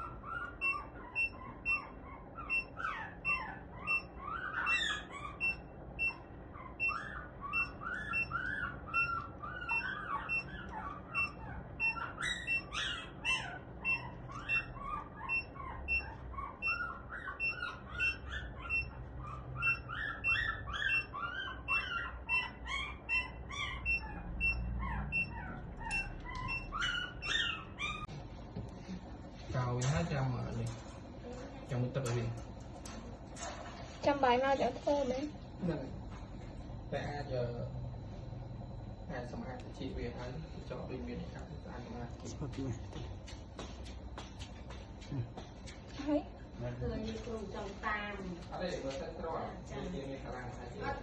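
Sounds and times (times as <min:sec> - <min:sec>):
short electronic beeps: 0:11.2 - 0:12.7.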